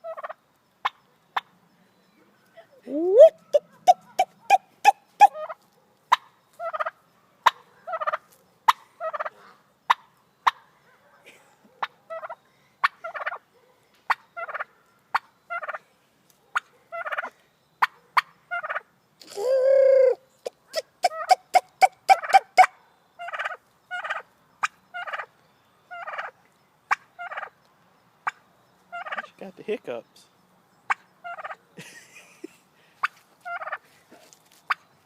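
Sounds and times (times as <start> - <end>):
turkey clucking: 0.0 - 1.5, 2.9 - 10.7, 11.8 - 13.4, 14.1 - 15.8, 16.5 - 25.3, 25.9 - 27.6, 28.2 - 29.3, 30.9 - 31.6, 33.0 - 33.8
turkey long low call: 2.9 - 5.6, 19.2 - 22.4.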